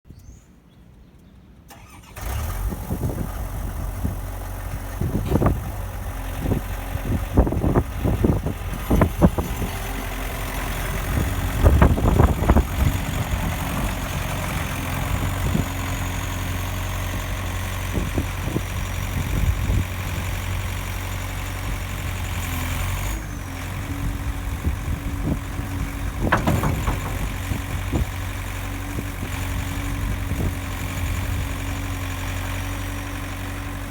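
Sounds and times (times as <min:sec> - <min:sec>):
diesel engine starting and running: 0:01.6 - 0:33.9
short clunks and knocks: 0:25.6 - 0:29.4.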